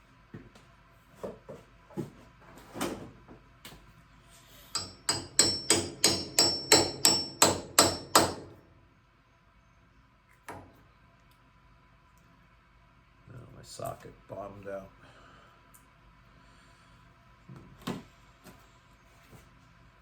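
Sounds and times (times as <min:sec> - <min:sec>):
hammer tapping metal socket: 0:04.8 - 0:08.4.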